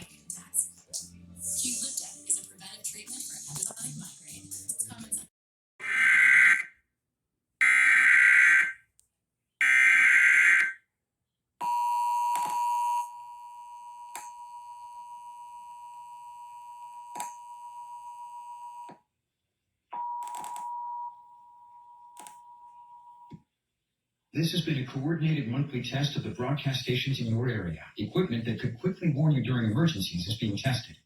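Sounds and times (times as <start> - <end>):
buzzy data bursts: 0.0 - 5.2.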